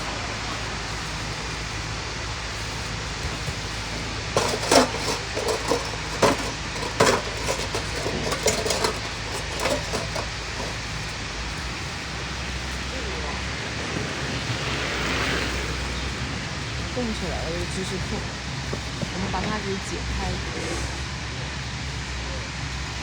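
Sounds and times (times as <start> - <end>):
steady low hum: 0.0 - 23.0
kitchen utensils clinking: 3.9 - 11.1.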